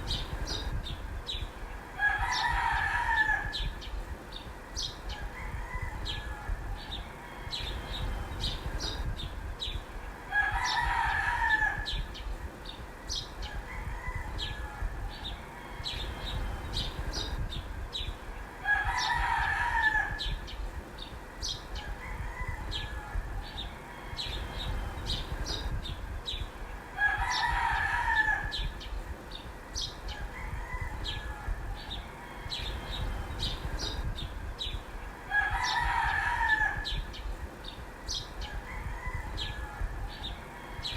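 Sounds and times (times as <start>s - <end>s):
rooster crowing: 1.9s - 3.8s, 5.1s - 8.1s, 10.3s - 12.2s, 13.4s - 16.4s, 18.6s - 20.5s, 21.8s - 24.7s, 27.0s - 28.8s, 30.1s - 33.0s, 35.1s - 37.1s, 38.1s - 40.9s.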